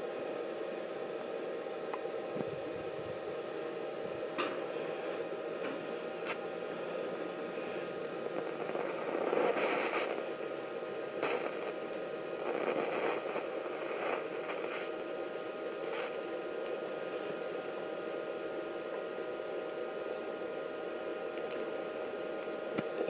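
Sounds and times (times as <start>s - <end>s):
faint steady whine: 0.0s - 23.0s
welding arc crackling hiss: 4.3s - 17.6s.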